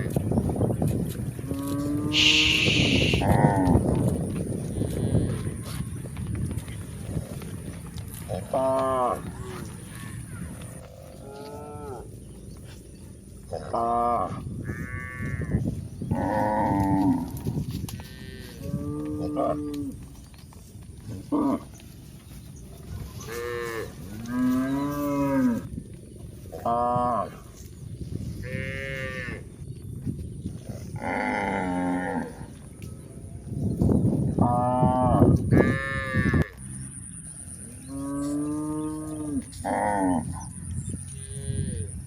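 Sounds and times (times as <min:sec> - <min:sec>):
cattle mooing: 0:01.4 - 0:03.9, 0:08.3 - 0:12.0.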